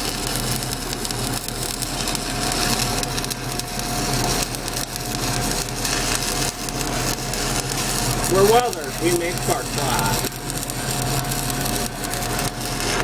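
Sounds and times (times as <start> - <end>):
welding arc crackling and sizzling: 0.0 - 13.0
steady hum: 7.8 - 13.0.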